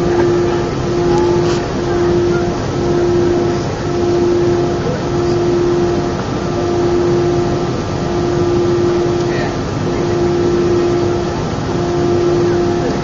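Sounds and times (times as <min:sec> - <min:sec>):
jet engine rush in cabin: 0:00.0 - 0:13.0
jet engine whine: 0:00.0 - 0:13.0.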